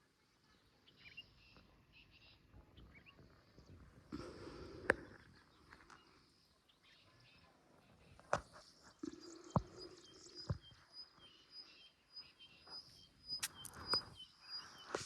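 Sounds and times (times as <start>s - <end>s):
small bird chirping: 0.1s - 15.0s.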